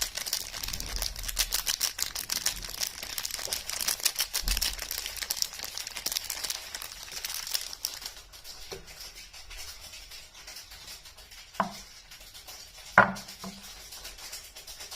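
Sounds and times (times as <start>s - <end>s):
packaging crinkling: 0.0s - 14.9s
sharp knocks: 13.0s - 13.6s.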